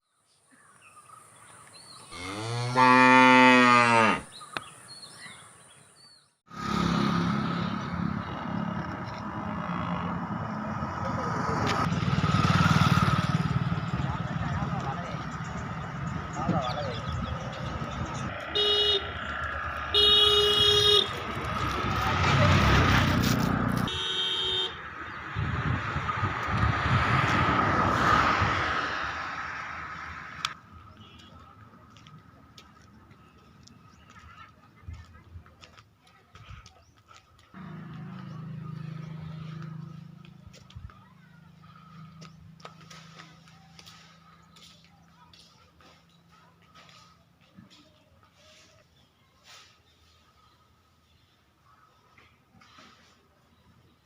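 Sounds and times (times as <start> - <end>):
cow mooing: 2.1 - 4.3, 9.4 - 10.3
vehicle horn honking: 18.5 - 19.2, 19.9 - 21.3, 23.8 - 24.8, 30.9 - 31.4.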